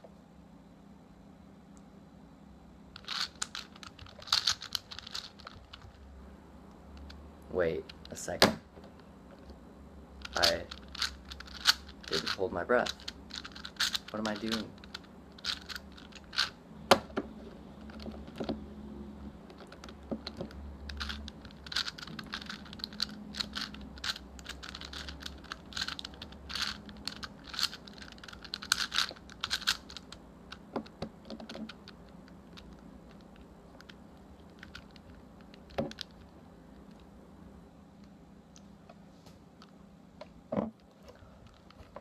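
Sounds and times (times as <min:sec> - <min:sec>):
plastic puzzle cube clicking: 0:03.0 - 0:06.0, 0:10.2 - 0:16.5, 0:19.5 - 0:36.3.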